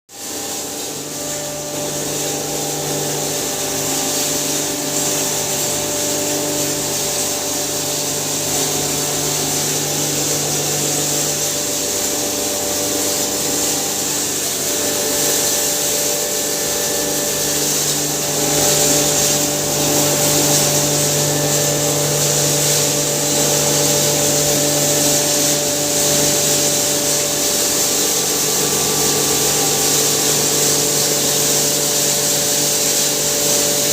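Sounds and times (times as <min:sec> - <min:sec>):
hammer mill grinding: 0:00.2 - 0:33.9.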